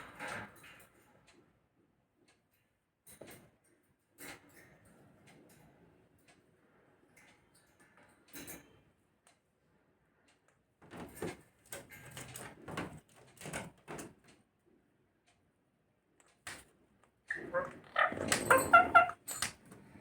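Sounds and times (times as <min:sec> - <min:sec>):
parrot raspy calls: 0:17.3 - 0:19.4.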